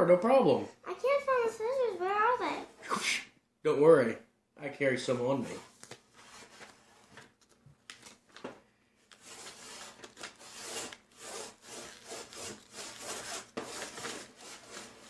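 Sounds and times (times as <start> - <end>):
scissors cutting paper: 9.1 - 15.0.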